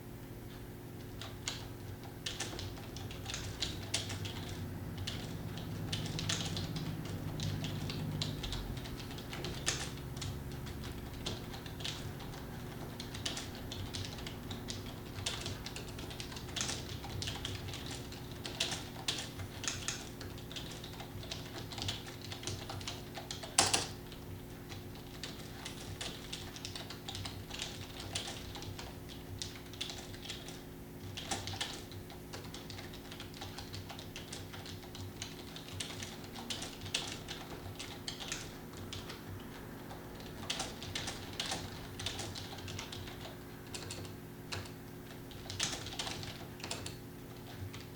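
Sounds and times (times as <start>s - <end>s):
steady low hum: 0.0s - 47.9s
typing on a keyboard: 1.0s - 47.9s.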